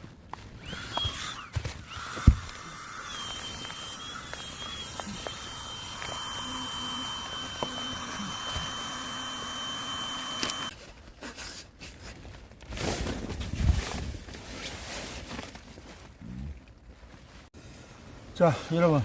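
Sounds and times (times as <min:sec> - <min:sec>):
steady high whine: 0:00.6 - 0:10.7.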